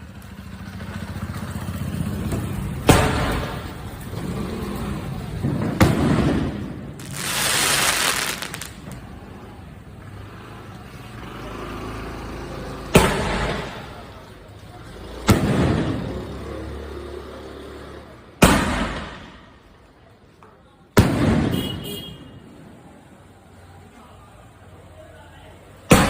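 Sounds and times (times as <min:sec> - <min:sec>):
firework booms: 0:02.8 - 0:04.0, 0:05.2 - 0:09.1, 0:13.0 - 0:14.1, 0:15.2 - 0:16.2, 0:18.4 - 0:19.5, 0:21.0 - 0:22.2
firework hissing burst: 0:07.0 - 0:08.8.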